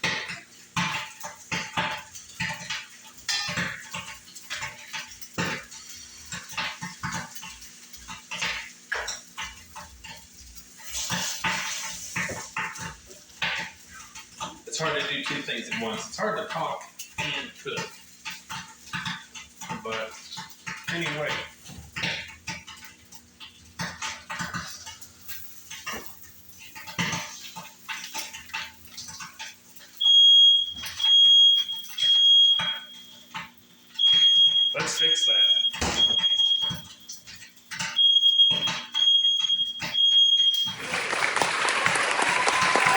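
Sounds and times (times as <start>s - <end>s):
dishes and pans clattering: 0.0s - 10.2s
pans and utensils clattering: 0.0s - 30.0s
smoke alarm beeping: 29.9s - 42.9s.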